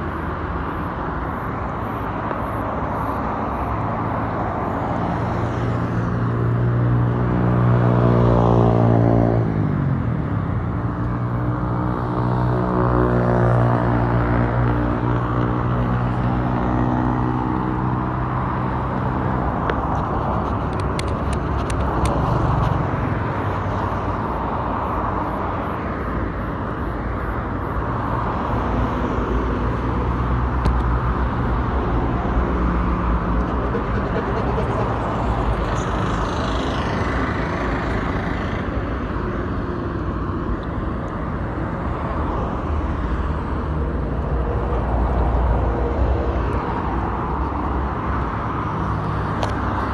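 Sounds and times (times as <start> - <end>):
cars passing on highway: 0.0 - 49.9
deep engine drone: 31.0 - 36.3.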